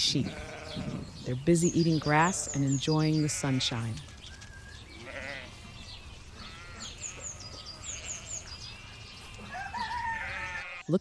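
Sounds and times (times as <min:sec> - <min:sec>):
sheep bleating: 0:00.1 - 0:01.1, 0:02.4 - 0:04.0, 0:05.0 - 0:11.0.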